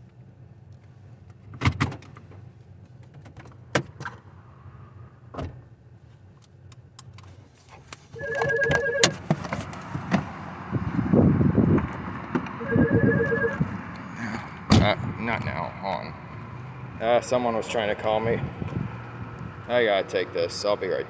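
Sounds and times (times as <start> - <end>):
handling clicks and knocks: 6.7 - 10.3
mobile phone ringing: 8.2 - 9.2, 12.6 - 13.6.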